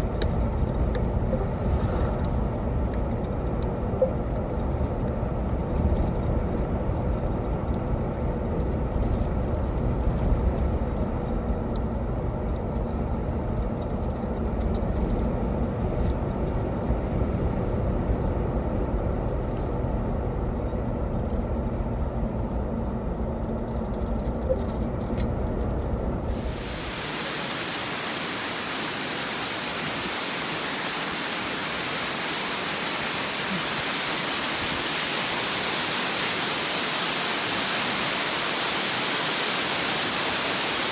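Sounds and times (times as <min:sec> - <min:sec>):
waterfall rushing: 0:26.3 - 0:40.9.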